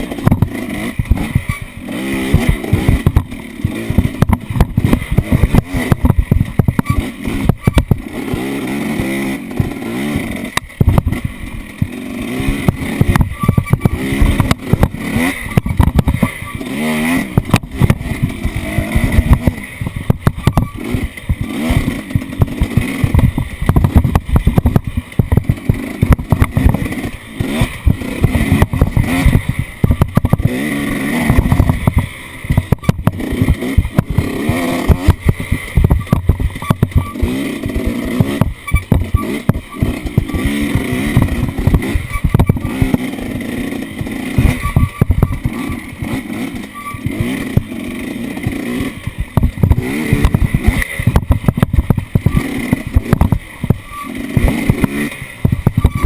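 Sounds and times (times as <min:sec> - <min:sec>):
off-road vehicle engine revving: 0:00.0 - 0:56.0
vehicle knocks and rattles: 0:12.6 - 0:16.6.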